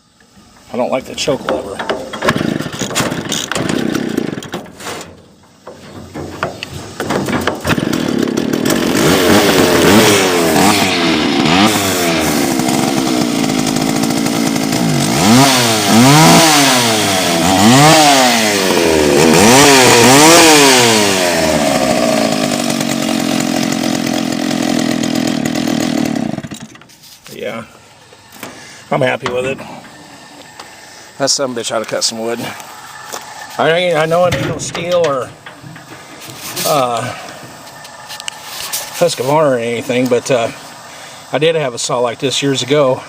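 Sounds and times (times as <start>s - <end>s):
chainsaw engine revving and sputtering: 2.2s - 4.6s, 7.2s - 26.7s.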